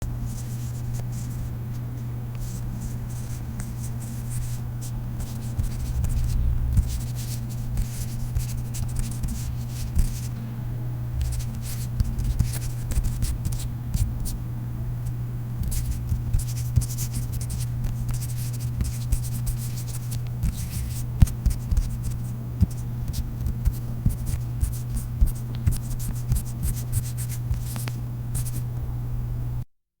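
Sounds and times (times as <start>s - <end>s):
steady low hum: 0.0s - 29.7s
hands rubbing and tapping: 15.6s - 28.6s.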